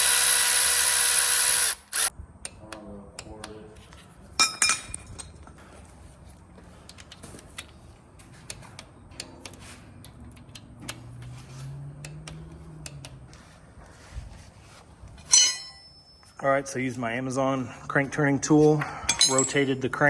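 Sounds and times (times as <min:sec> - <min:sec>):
hand tools clicking on metal: 0:08.4 - 0:13.4.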